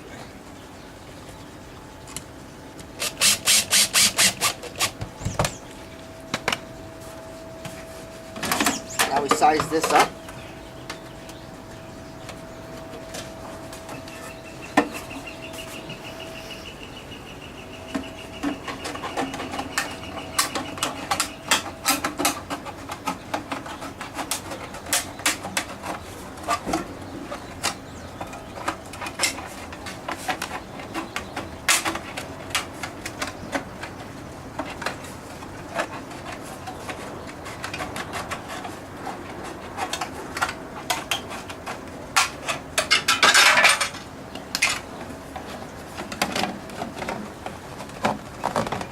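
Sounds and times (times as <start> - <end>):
faint steady tone: 5.1 - 23.6.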